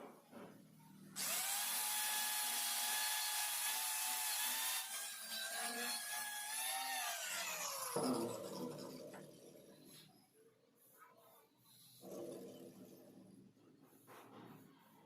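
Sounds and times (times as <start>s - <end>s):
power tool grinding metal: 1.2s - 9.2s.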